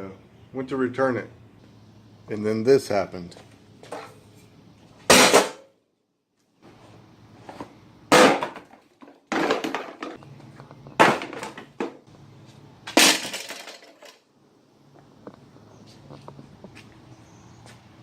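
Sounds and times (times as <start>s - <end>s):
car front end being smashed: 5.1s - 5.6s, 8.1s - 10.2s, 11.0s - 12.0s, 12.9s - 14.0s
crunching and breaking metal: 12.9s - 14.3s.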